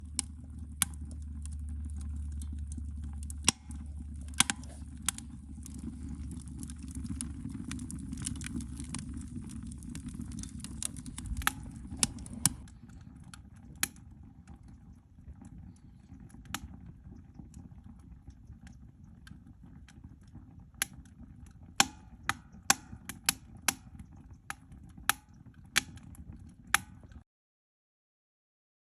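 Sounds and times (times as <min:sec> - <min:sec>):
low rumble: 0:00.0 - 0:12.9
wood fire crackling and popping: 0:00.0 - 0:27.2.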